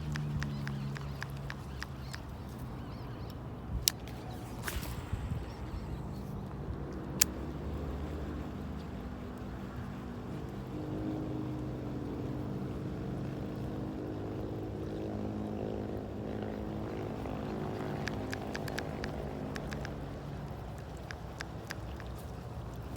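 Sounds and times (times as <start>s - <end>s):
sharp click: 0.0s - 7.8s, 18.0s - 22.2s
motor engine running: 0.0s - 22.9s.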